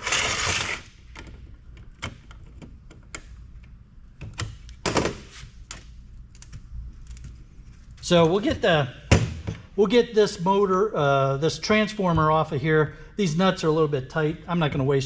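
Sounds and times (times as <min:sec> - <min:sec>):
tool scraping metal: 0:00.0 - 0:00.9.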